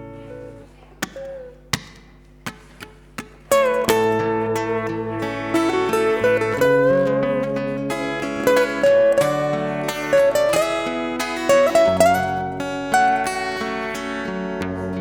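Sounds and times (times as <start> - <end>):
plucked acoustic guitar: 0.0 - 15.0
sliding melody line: 3.6 - 15.0.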